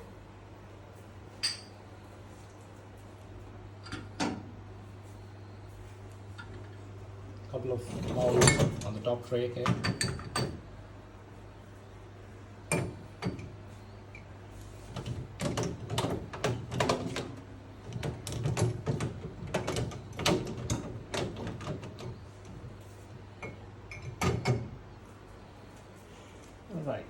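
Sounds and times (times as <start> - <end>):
steady low hum: 0.0 - 27.0
dishes clattering in dishwasher rack: 8.0 - 8.9, 9.6 - 10.6.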